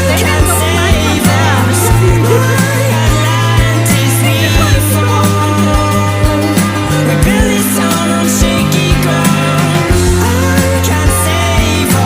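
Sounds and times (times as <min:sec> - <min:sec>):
gliding vocal-like melody: 0:00.0 - 0:06.4
music with beat and bass: 0:00.0 - 0:12.0.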